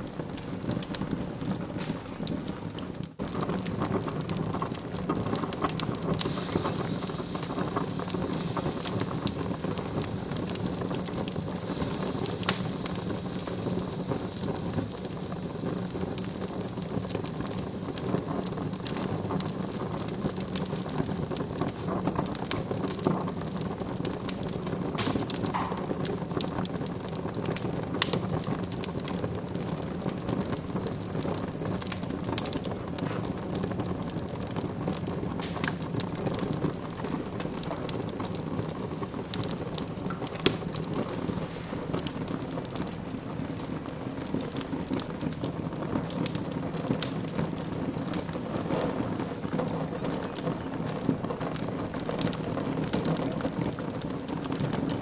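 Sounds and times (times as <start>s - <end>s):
wood fire crackling: 0.0s - 55.0s
high hiss: 3.2s - 45.6s.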